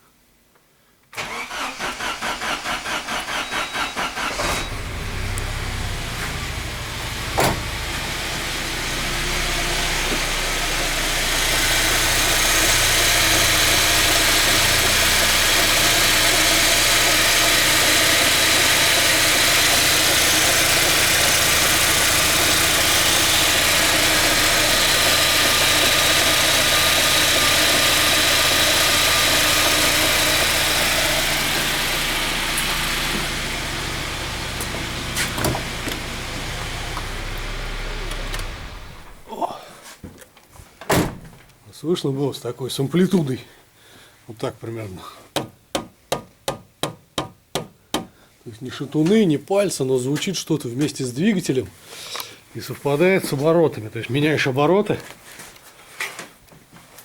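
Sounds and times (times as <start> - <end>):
engine starter cranking: 1.2 - 39.4
petrol engine running: 1.2 - 39.4
drive belt knocking: 12.5 - 37.5.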